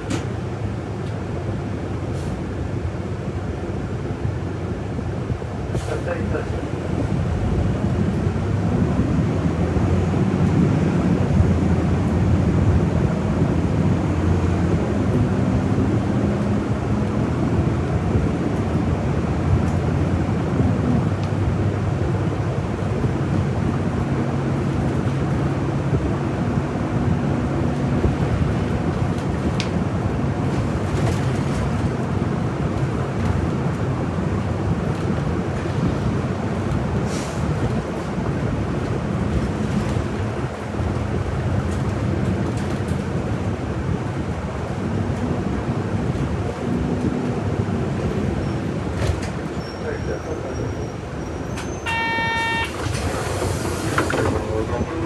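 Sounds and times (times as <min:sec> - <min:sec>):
bus engine droning: 0:00.0 - 0:55.0.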